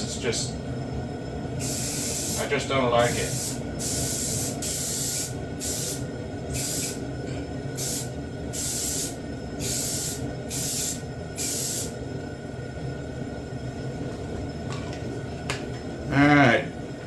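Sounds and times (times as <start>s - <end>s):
spray can hissing: 1.6s - 2.5s, 3.1s - 7.0s, 7.8s - 11.9s.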